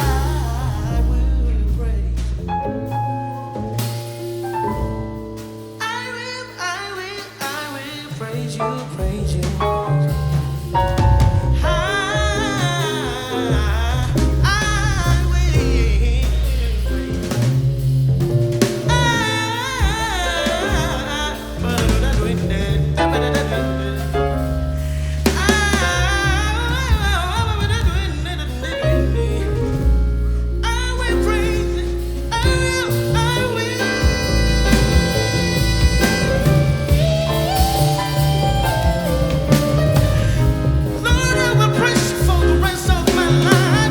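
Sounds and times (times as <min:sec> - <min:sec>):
double bass: 0:00.0 - 0:43.9
drum kit: 0:00.0 - 0:43.9
piano: 0:00.0 - 0:43.9
trumpet melody: 0:33.4 - 0:43.9
saxophone melody: 0:33.5 - 0:42.0.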